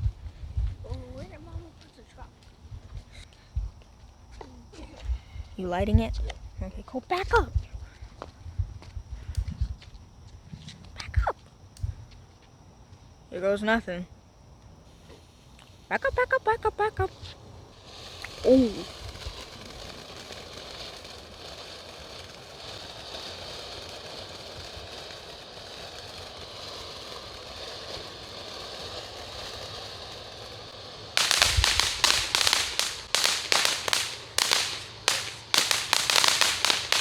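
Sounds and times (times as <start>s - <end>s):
firework cracks and bangs: 0.0s - 3.8s, 14.9s - 37.0s
firework fuse hissing: 0.0s - 12.4s, 13.1s - 37.0s.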